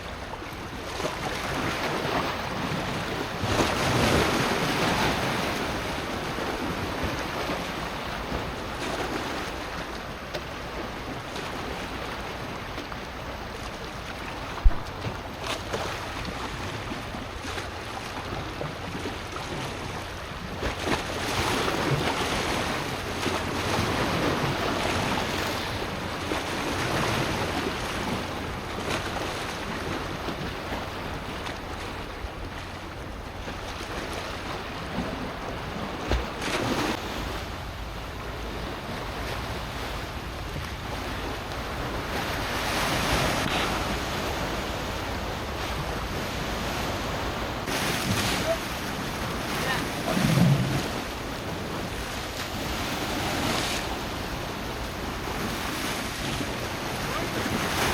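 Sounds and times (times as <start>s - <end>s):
sea waves breaking: 0.0s - 57.9s
wind buffeting microphone: 14.5s - 15.3s.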